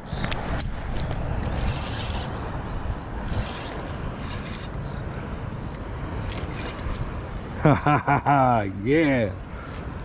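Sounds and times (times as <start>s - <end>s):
fishing reel clicking and whirring: 3.2s - 4.8s.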